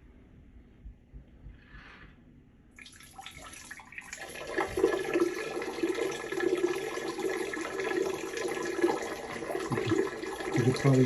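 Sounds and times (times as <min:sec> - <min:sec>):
urine splashing into toilet water: 0:02.7 - 0:11.0.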